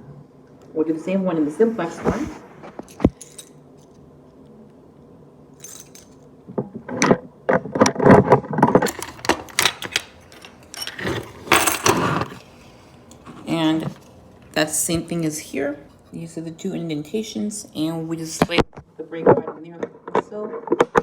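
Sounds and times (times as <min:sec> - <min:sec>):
keys jangling against metal: 0:03.1 - 0:03.6, 0:05.6 - 0:06.2.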